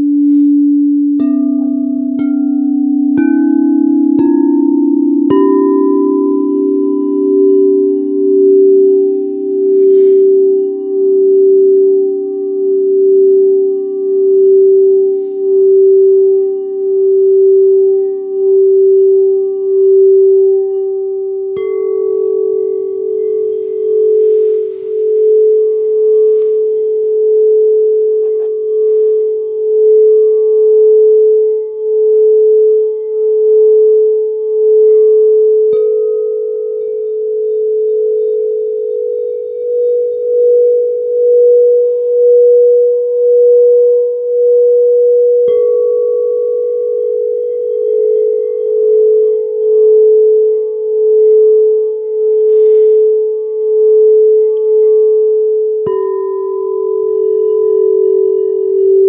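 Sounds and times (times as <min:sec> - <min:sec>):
singing bowl strike: 0:00.0 - 0:30.4, 0:34.8 - 0:59.0
singing bowls ringing: 0:00.0 - 0:59.0.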